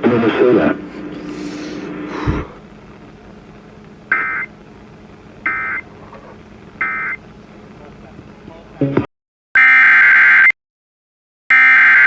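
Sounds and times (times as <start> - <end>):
low steady hum: 0.0 - 9.1.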